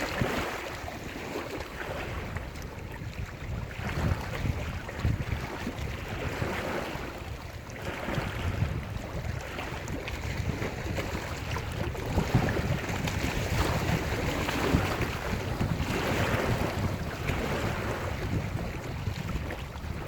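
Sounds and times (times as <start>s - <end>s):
waves breaking on shore: 0.0s - 20.0s
wind buffeting microphone: 0.0s - 20.0s.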